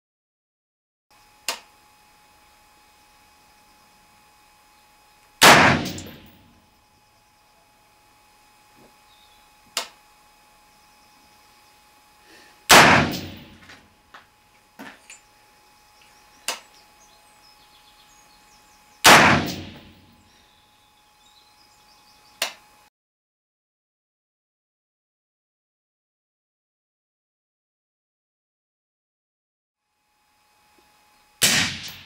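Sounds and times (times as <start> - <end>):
loud rifle shots: 5.4 - 6.4, 12.7 - 13.7, 19.0 - 20.0, 31.4 - 32.0
short sharp cracks: 31.4 - 32.0.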